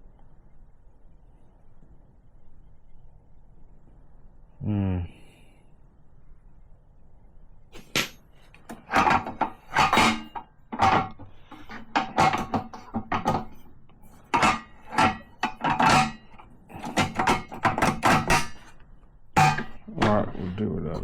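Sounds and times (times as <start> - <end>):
clattering knocks of saw parts: 7.8 - 21.0.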